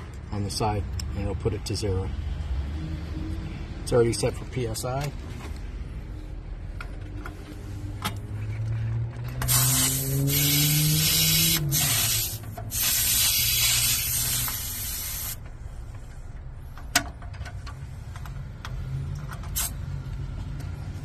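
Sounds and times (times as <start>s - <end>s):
air hissing from tire valve: 9.4s - 15.4s.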